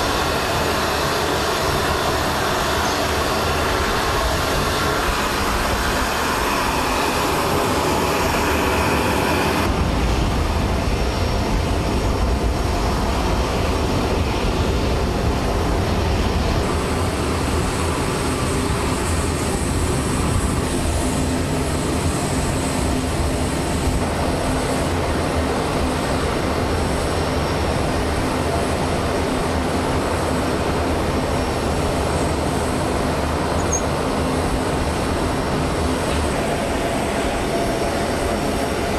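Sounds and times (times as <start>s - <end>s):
helicopter turbine and rotor: 0.0s - 38.9s
thin high whine: 33.4s - 34.2s.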